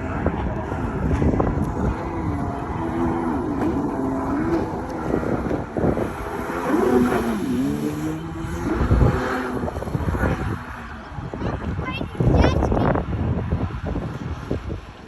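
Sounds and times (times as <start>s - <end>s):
jet ski engine revving: 0.0s - 11.8s.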